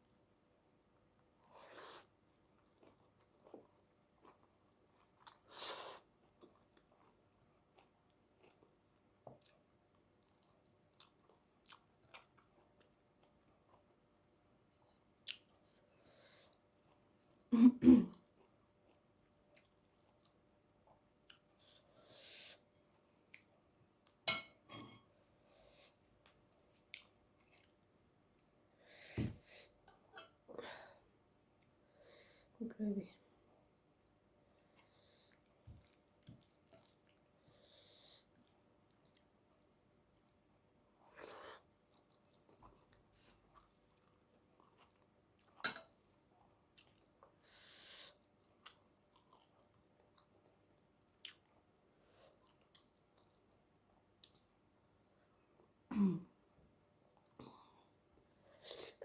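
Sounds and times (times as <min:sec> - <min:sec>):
person chewing food: 0:01.4 - 0:17.1, 0:18.2 - 0:22.0, 0:25.3 - 0:28.6, 0:34.5 - 0:54.6.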